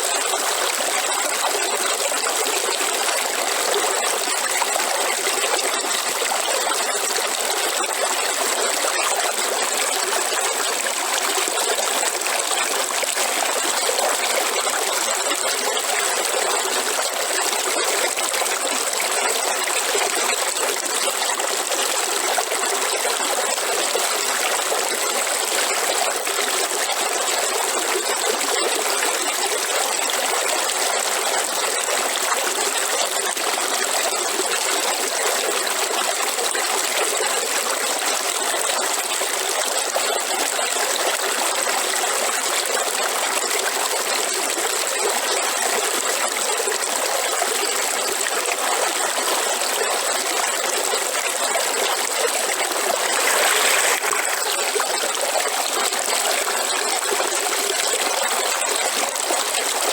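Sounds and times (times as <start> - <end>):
river water flowing: 42.1 - 59.9.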